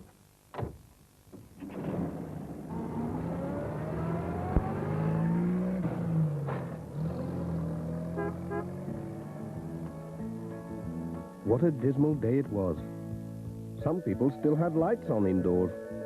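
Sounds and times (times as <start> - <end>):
van engine accelerating: 2.6 - 11.3.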